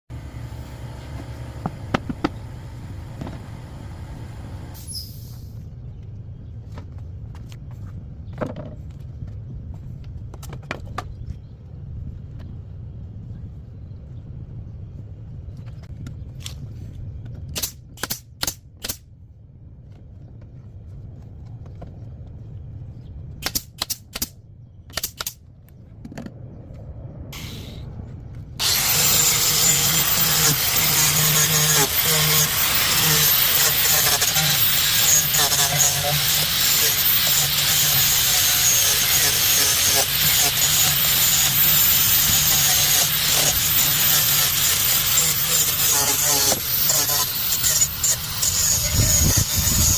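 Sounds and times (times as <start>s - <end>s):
loud power tool running: 28.6s - 49.9s.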